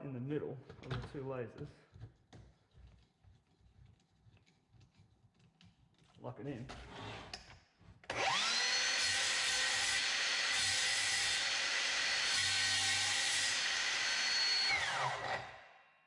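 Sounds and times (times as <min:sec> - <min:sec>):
mitre saw whine: 0:08.1 - 0:15.6
saw cutting wood: 0:08.1 - 0:15.7.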